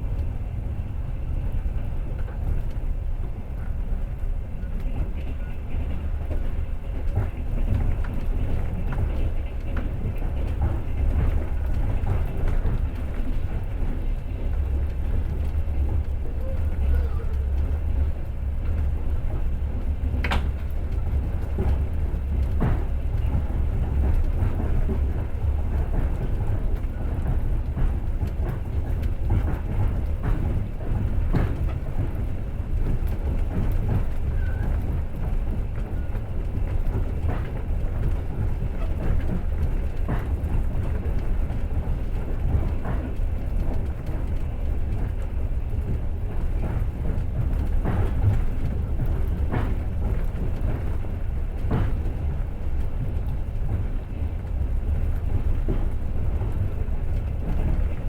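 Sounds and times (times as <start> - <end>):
train low rumble: 0.0 - 58.0.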